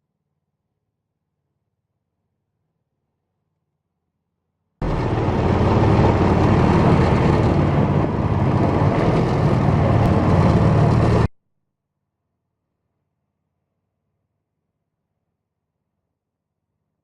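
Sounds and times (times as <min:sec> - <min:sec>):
motor running with low rumble: 0:04.8 - 0:11.3.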